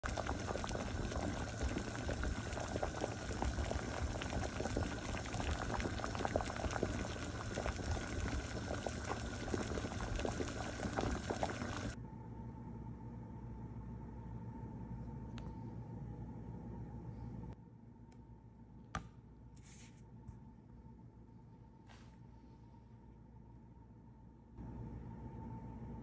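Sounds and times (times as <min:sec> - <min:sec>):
water boiling in a pot: 0:00.0 - 0:12.0.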